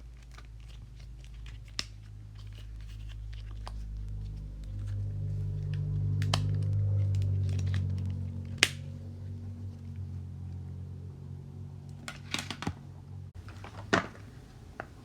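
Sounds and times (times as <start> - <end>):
plastic fidget toys handled: 0.0 - 8.8, 11.9 - 15.0
low steady hum: 0.0 - 15.0.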